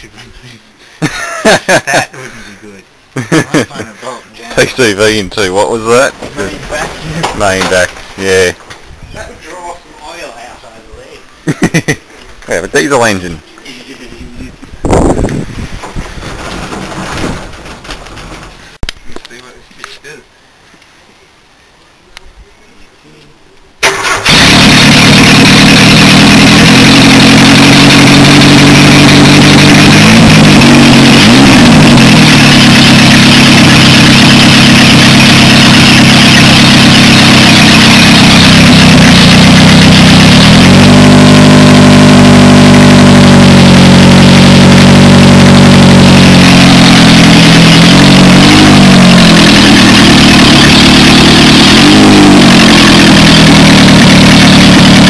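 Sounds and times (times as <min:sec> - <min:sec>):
car engine starting and revving: 0:23.8 - 0:55.0.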